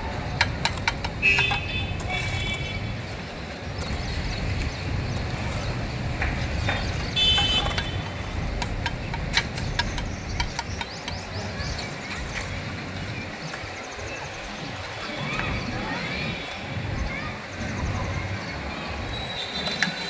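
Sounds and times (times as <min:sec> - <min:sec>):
steel trowel tapping on bricks: 0:00.1 - 0:13.7.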